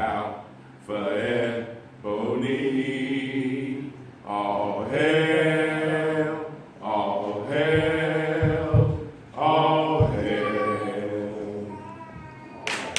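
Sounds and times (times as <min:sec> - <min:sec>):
voices chanting a cappella: 0:00.0 - 0:12.9
dull thumps: 0:07.5 - 0:09.2, 0:09.9 - 0:10.4.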